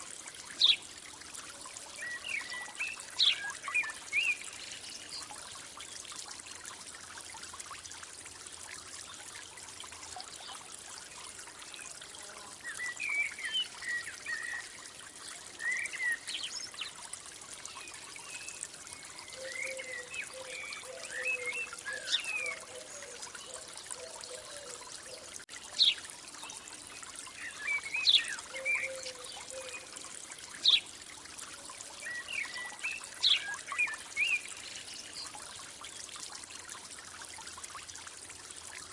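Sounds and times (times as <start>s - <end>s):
water trickling: 0.0s - 38.9s
lower repeated bird calls: 19.2s - 26.0s, 27.4s - 29.9s.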